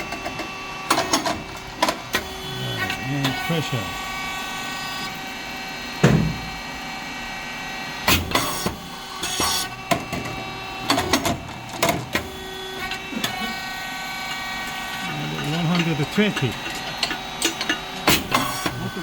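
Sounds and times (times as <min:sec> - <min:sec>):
machine motor humming: 0:00.9 - 0:06.7, 0:17.9 - 0:19.0.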